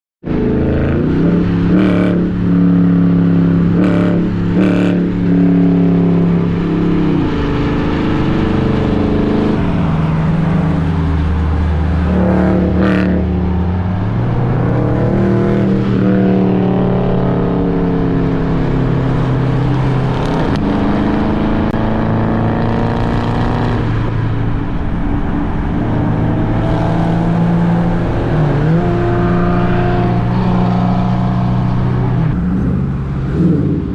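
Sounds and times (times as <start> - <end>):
car engines revving: 0.2 - 33.9.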